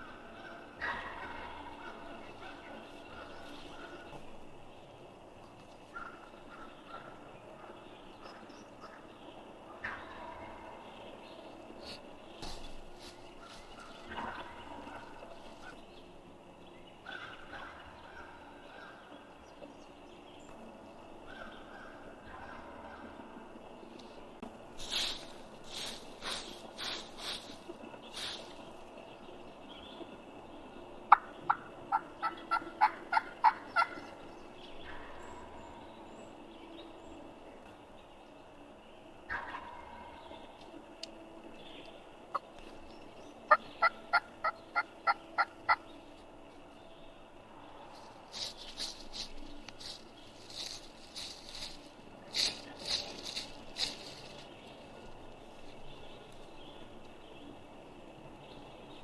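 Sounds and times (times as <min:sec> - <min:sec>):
footsteps on dry leaves: 0:11.8 - 0:15.8, 0:24.7 - 0:29.0, 0:47.8 - 0:56.6
wild turkey yelping: 0:31.1 - 0:34.1, 0:43.5 - 0:45.8.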